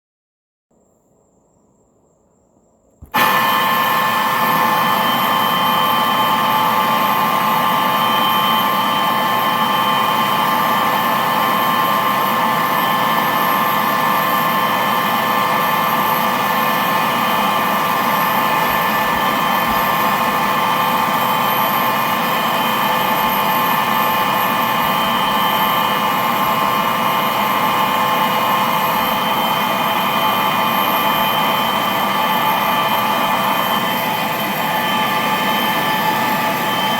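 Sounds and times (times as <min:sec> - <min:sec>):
engine drone with held tones: 0:03.0 - 0:36.9.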